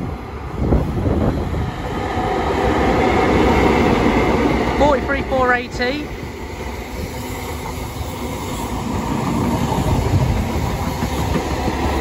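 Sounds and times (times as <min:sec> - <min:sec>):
train heavy rumble: 0:00.0 - 0:12.0
wheels clattering over rail joints: 0:07.6 - 0:12.0.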